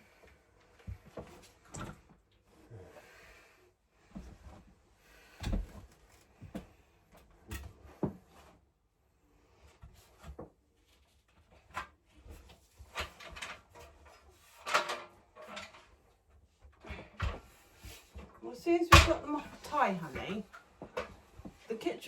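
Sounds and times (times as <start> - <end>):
household things knocking and clattering: 11.5 - 16.0, 16.6 - 21.6.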